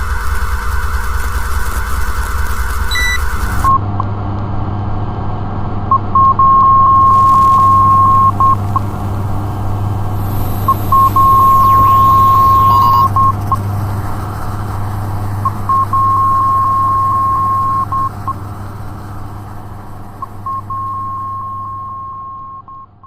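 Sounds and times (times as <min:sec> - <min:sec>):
low electrical hum: 0:03.7 - 0:22.6
high beeping tone: 0:10.2 - 0:13.4.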